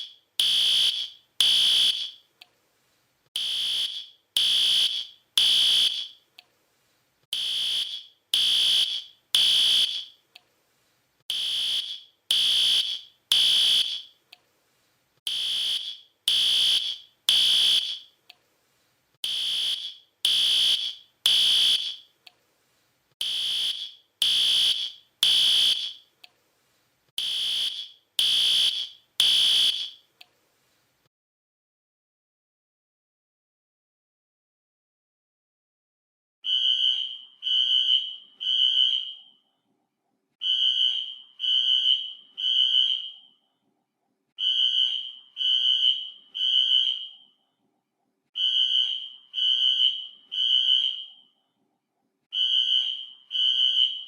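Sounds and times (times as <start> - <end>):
fire alarm high beeps: 0.0 - 2.3, 3.4 - 6.2, 7.4 - 10.2, 11.3 - 14.2, 15.3 - 18.2, 19.2 - 22.1, 23.2 - 26.1, 27.2 - 30.0, 36.4 - 39.4, 40.4 - 43.4, 44.4 - 47.4, 48.4 - 51.4, 52.3 - 54.0.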